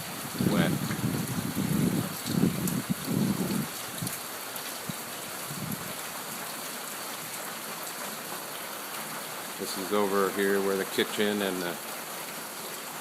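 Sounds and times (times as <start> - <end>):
hard rain falling: 0.0 - 13.0.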